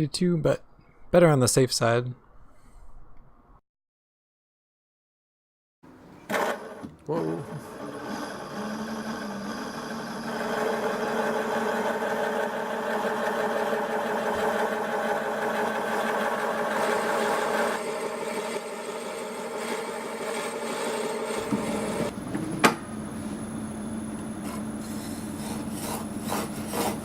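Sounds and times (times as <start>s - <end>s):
lathe motor hum: 6.3s - 27.0s.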